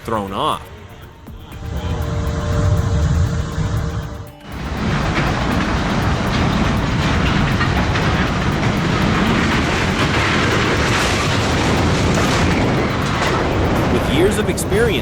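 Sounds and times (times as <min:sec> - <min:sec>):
train wheels rolling on track: 0:00.0 - 0:15.0.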